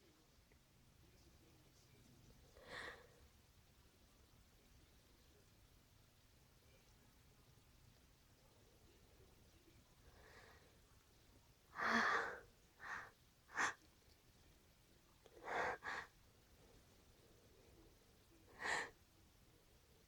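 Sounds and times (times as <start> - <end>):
person gasping: 11.8 - 13.0, 15.4 - 16.1, 18.6 - 18.9.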